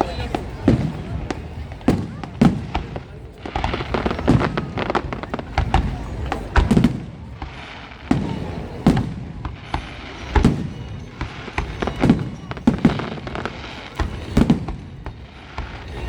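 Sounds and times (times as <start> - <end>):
fireworks cracking: 0.0 - 16.0
low firework booms: 0.0 - 16.0.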